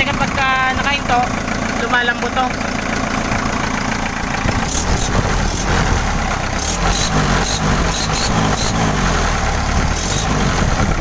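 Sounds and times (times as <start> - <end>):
diesel engine idling: 0.0 - 11.0.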